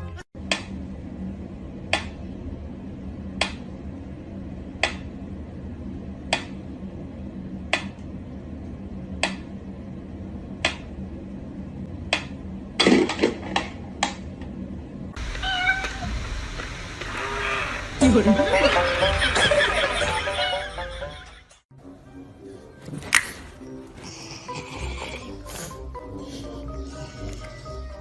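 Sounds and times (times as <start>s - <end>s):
steady low hum: 0.0s - 21.6s.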